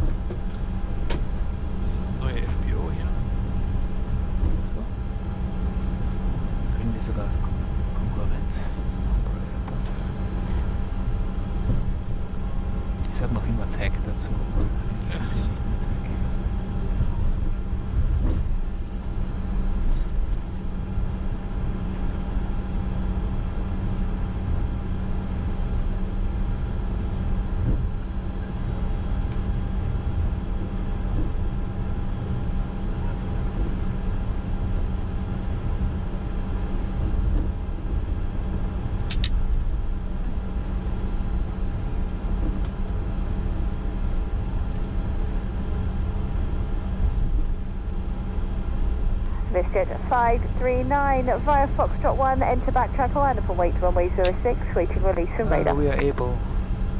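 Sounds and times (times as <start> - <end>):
jet engines idling: 0.0 - 25.3, 38.4 - 56.9
sharp click: 39.0 - 39.4.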